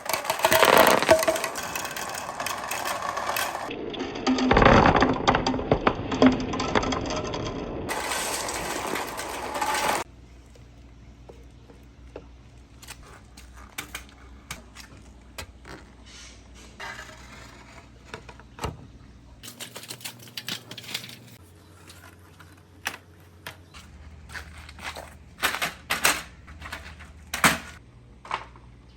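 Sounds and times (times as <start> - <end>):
marbles rattling down a track: 0.0 - 3.7, 4.5 - 10.1.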